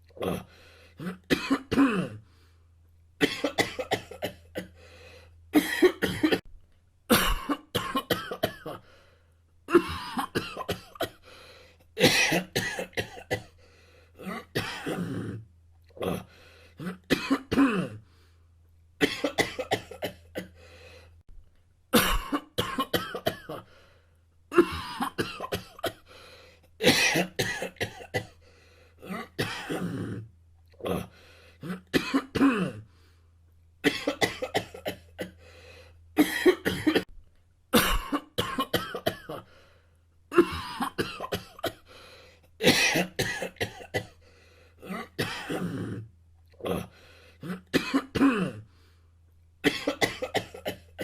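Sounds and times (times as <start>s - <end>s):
person coughing: 0.2s - 2.2s, 3.2s - 4.8s, 5.6s - 6.5s, 7.1s - 8.8s, 9.7s - 11.2s, 12.0s - 13.6s, 14.2s - 15.4s, 16.0s - 18.0s, 19.0s - 20.6s, 21.9s - 23.7s, 24.5s - 26.1s, 26.8s - 28.4s, 29.0s - 32.9s, 33.8s - 35.4s, 36.2s - 37.1s, 37.8s - 39.5s, 40.3s - 41.9s, 42.6s - 44.2s, 44.8s - 48.7s, 49.6s - 51.0s.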